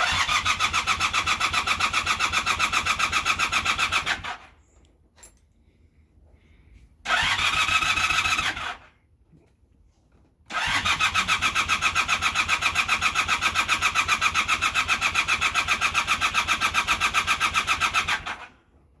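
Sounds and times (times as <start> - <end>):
motorcycle starter cranking engine: 0.0 - 4.6, 7.0 - 8.9, 10.5 - 18.6.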